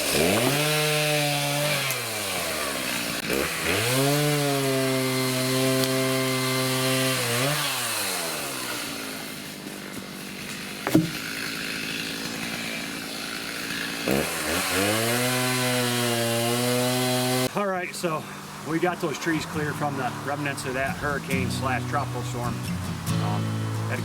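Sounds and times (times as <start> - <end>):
chainsaw revving and idling: 0.0 - 24.0
sharp crack: 10.5 - 12.4.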